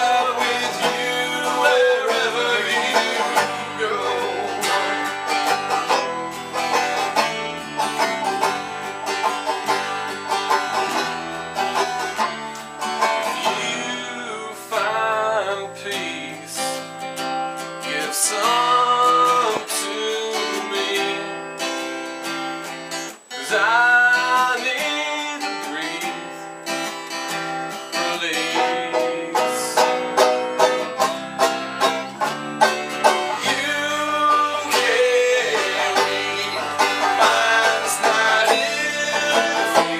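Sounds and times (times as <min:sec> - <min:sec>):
person singing: 0:00.0 - 0:06.1, 0:13.0 - 0:16.9, 0:17.8 - 0:21.4, 0:23.3 - 0:26.5, 0:27.9 - 0:31.2, 0:33.0 - 0:39.9
banjo and guitar picking: 0:00.0 - 0:39.9.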